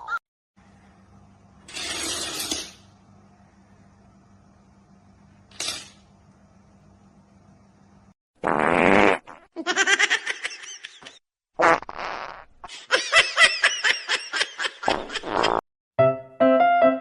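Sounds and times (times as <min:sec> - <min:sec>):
fart-like blast: 0:08.4 - 0:09.4, 0:11.6 - 0:12.5.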